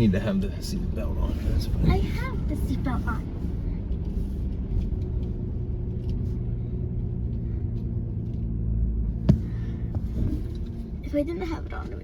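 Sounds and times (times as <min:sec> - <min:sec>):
car engine running: 0:00.0 - 0:12.0
sharp knock: 0:09.3 - 0:10.4.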